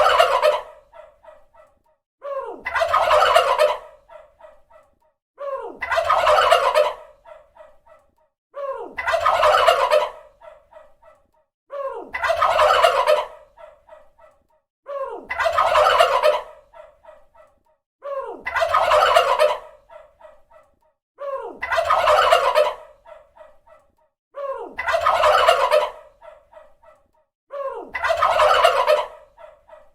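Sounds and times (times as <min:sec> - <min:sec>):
turkey gobbling: 0:00.0 - 0:01.1, 0:02.8 - 0:04.2, 0:05.9 - 0:07.4, 0:09.1 - 0:10.6, 0:12.2 - 0:13.7, 0:15.3 - 0:16.9, 0:18.5 - 0:20.1, 0:21.7 - 0:23.2, 0:24.8 - 0:26.4, 0:28.0 - 0:29.5.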